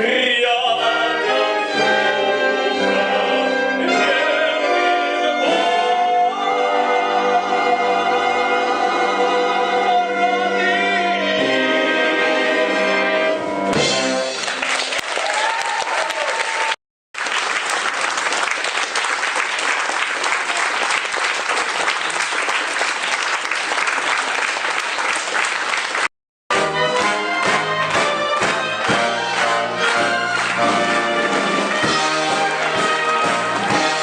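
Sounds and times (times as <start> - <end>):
audience applauding: 14.2 - 34.0
instrumental music with steady beat: 26.5 - 34.0.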